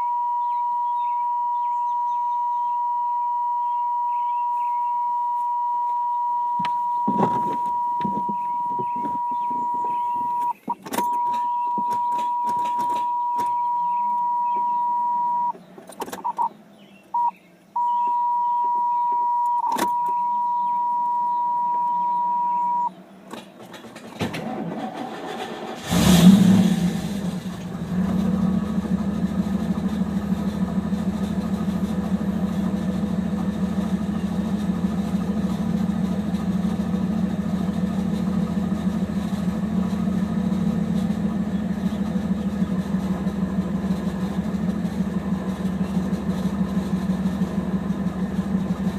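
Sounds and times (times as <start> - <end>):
high electronic tone: 0.0 - 15.5
car engine cranking and idling: 0.0 - 48.9.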